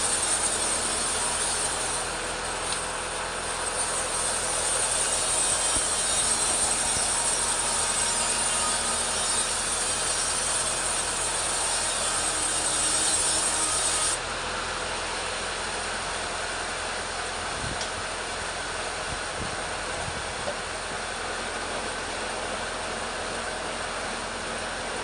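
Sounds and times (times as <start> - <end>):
chainsaw cutting wood: 0.0 - 14.2.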